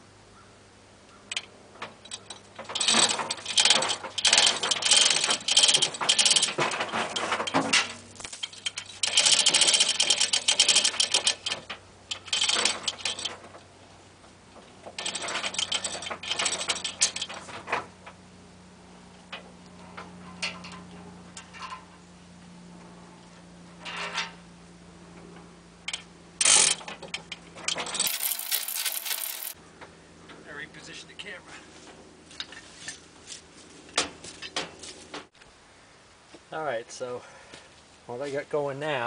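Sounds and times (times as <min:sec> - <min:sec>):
chain rattling: 0:27.8 - 0:29.6.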